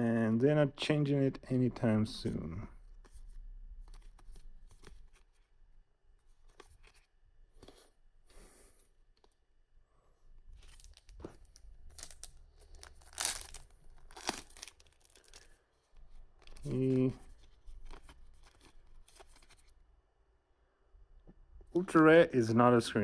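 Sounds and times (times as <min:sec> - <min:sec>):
wrapper tearing and crinkling: 0:10.6 - 0:15.6.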